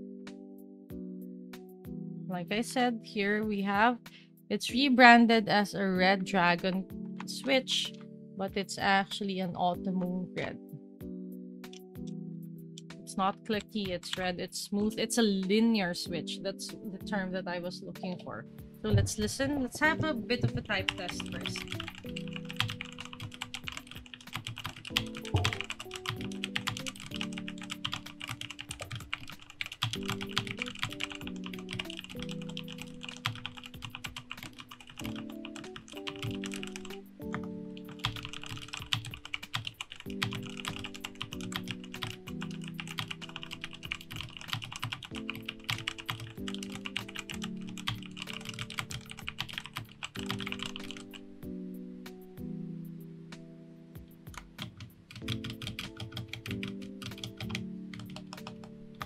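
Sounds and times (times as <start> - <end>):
background music with chords: 0.0 - 59.0
mechanical keyboard typing: 19.2 - 51.2, 54.3 - 58.7.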